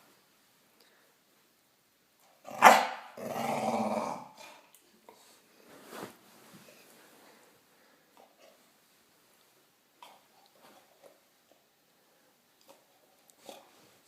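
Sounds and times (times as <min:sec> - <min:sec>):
dog barking: 0:02.5 - 0:03.1
dog growling: 0:03.2 - 0:04.5.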